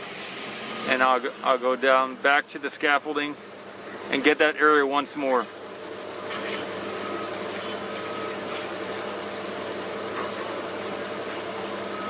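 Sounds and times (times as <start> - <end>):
machinery drone: 0.0 - 12.0
faint short high beeps: 6.9 - 8.6.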